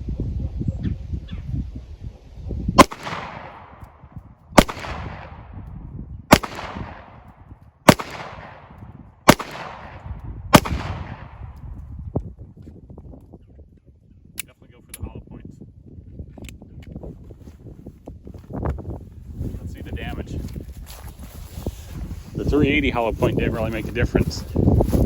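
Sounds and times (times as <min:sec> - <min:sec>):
pistol shots with echo: 0:02.8 - 0:03.9, 0:04.6 - 0:05.6, 0:06.3 - 0:07.3, 0:07.9 - 0:11.5.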